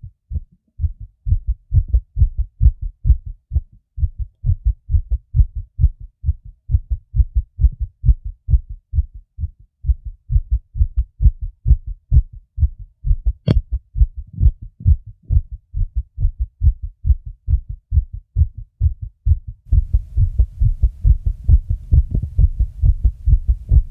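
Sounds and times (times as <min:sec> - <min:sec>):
fast heartbeat thumps: 0:00.0 - 0:23.9
low rumble: 0:19.7 - 0:23.9.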